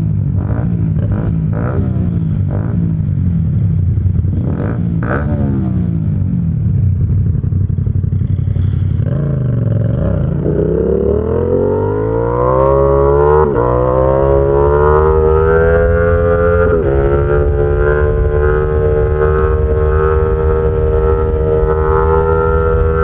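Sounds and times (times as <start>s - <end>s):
motorcycle engine accelerating: 0.0s - 23.0s
quickshifter upshifts: 0.2s - 12.2s.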